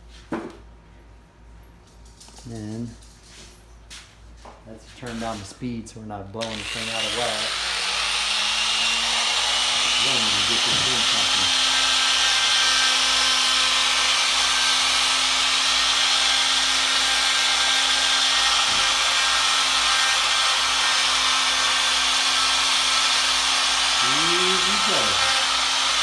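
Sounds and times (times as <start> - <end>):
die grinder grinding wood: 6.4 - 26.0.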